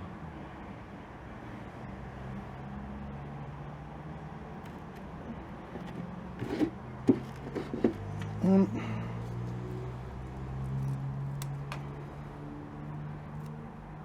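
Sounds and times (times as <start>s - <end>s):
low mechanical hum: 0.0s - 14.0s
handling knocks: 4.6s - 8.4s.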